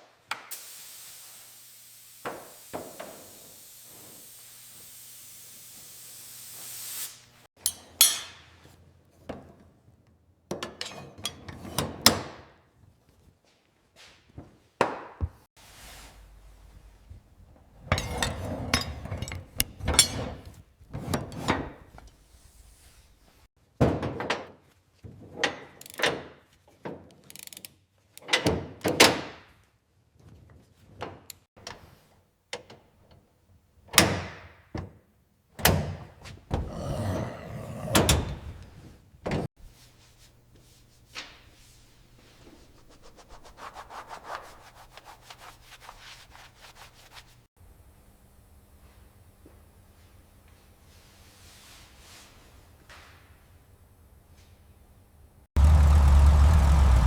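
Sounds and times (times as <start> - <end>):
sharp clicks and knocks of small parts: 25.8 - 26.2, 27.2 - 28.4
brief rubbing: 39.6 - 47.4.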